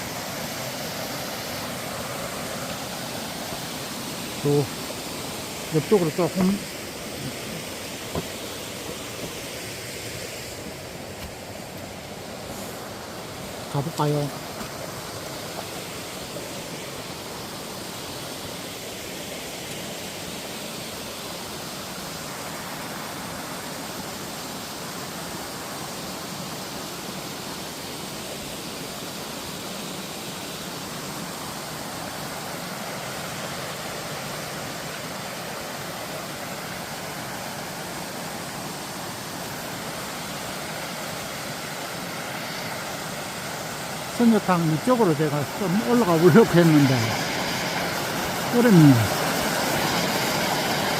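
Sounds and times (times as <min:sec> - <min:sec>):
stream rushing: 0:00.0 - 0:50.9.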